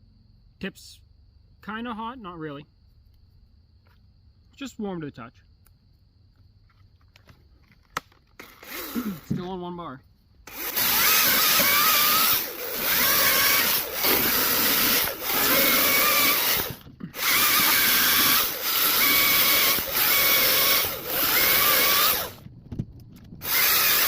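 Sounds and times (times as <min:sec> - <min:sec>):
battery chainsaw cutting wood: 0:08.4 - 0:09.4, 0:10.5 - 0:22.4, 0:23.4 - 0:24.0.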